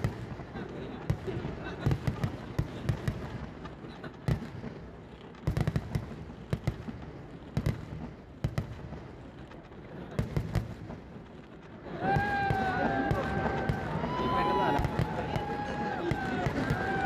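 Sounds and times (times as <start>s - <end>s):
fireworks bangs: 0.0s - 17.0s
fireworks crackle: 0.0s - 17.0s.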